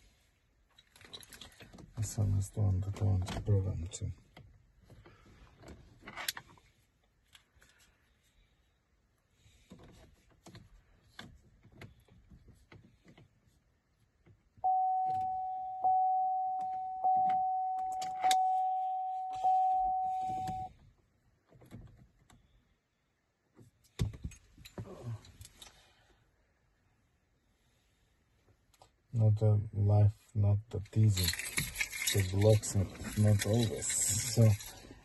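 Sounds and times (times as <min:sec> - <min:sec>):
car warning chime: 0:14.6 - 0:20.7
keys clicking and rattling: 0:31.1 - 0:34.9.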